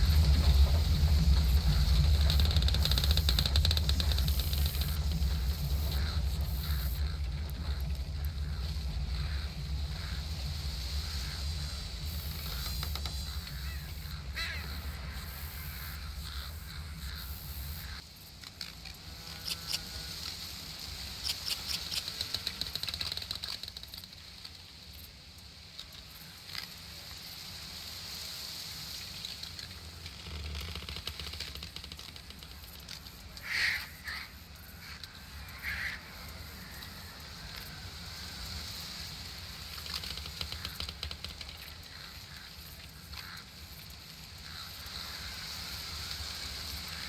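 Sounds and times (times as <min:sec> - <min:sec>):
birds chirping: 0:00.0 - 0:18.0
low rumble: 0:00.0 - 0:18.0.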